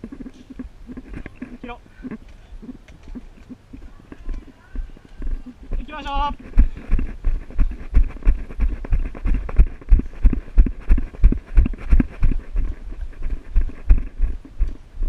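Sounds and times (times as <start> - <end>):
running footsteps: 0.0 - 15.0.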